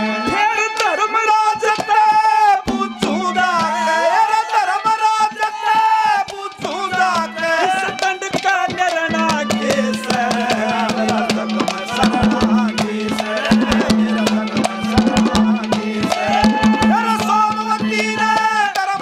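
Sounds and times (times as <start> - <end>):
bending melody line: 9.2 - 18.3
rapid hand drum strokes: 9.2 - 19.0.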